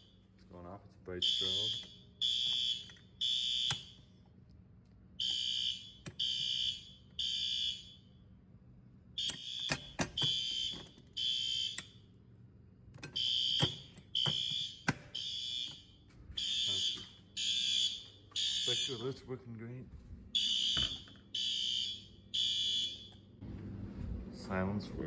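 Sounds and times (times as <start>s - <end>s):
fire alarm horn blasts: 1.1s - 4.2s, 5.2s - 8.4s, 9.1s - 12.0s, 13.0s - 19.3s, 20.3s - 23.4s
sharp clicks and knocks: 13.0s - 15.8s.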